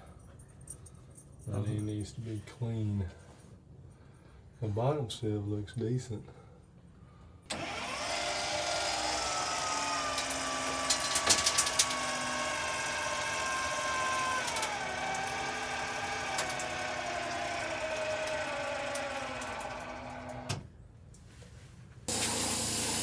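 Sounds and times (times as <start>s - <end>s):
power tool motor whine: 7.5s - 20.6s, 22.1s - 23.0s.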